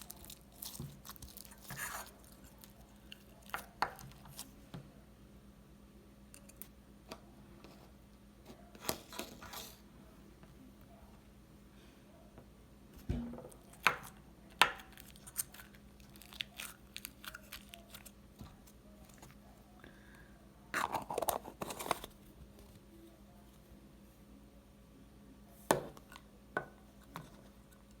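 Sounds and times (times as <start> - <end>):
crunchy slime crackling: 0.0 - 4.5, 13.6 - 19.4.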